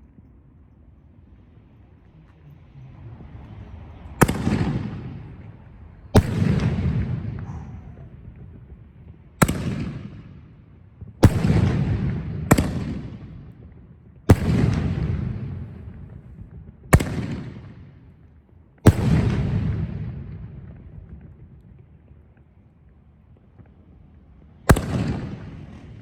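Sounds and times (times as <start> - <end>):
rumbling echo: 3.1 - 18.3, 18.9 - 21.8, 24.7 - 26.0
firework shells booming: 4.2 - 18.1, 18.9 - 21.6, 24.7 - 26.0.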